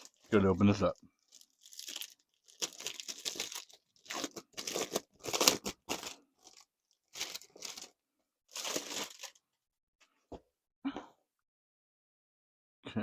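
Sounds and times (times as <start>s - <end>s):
packaging tearing and crinkling: 0.0s - 0.4s, 1.2s - 7.9s, 8.5s - 9.4s.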